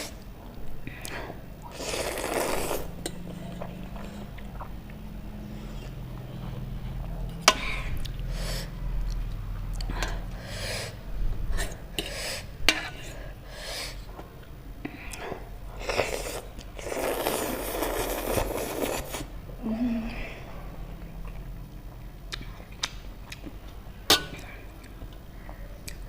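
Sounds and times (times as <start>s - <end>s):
chewing and mouth noises: 3.1s - 7.1s, 21.0s - 23.6s.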